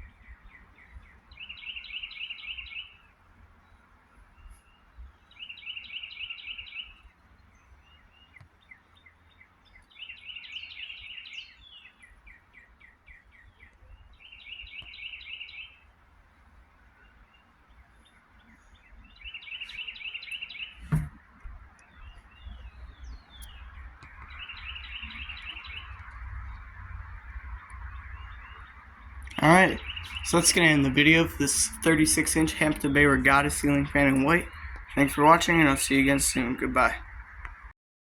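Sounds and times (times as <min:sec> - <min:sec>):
low wind rumble: 0:00.0 - 0:08.3, 0:09.0 - 0:37.7
falling bird chirps: 0:00.0 - 0:15.9, 0:16.8 - 0:37.7
bird trilling: 0:14.2 - 0:15.8, 0:19.1 - 0:21.1, 0:22.0 - 0:37.0
sharp knock: 0:20.9 - 0:21.2.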